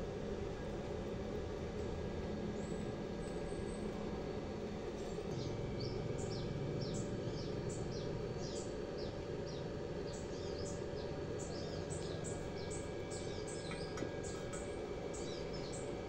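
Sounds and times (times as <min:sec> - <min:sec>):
small birds chirping: 0:05.3 - 0:16.0.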